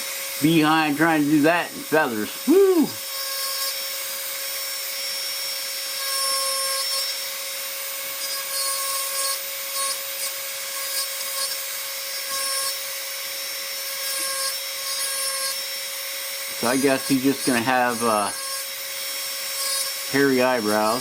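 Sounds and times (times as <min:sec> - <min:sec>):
rotary tool high whine: 0:00.0 - 0:21.0
bit grinding wood: 0:07.9 - 0:15.8, 0:16.4 - 0:21.0.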